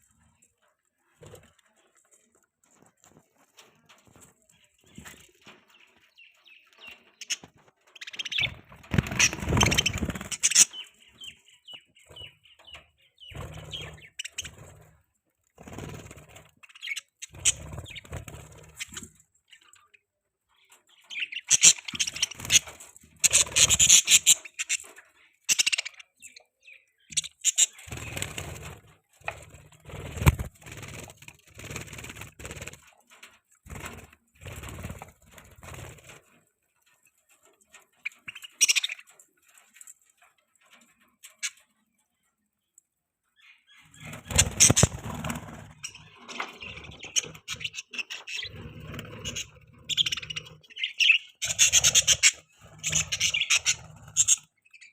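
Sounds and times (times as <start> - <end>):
budgies chirping and chattering: 4.1 - 15.0, 15.6 - 31.0, 37.2 - 39.2, 43.4 - 54.9.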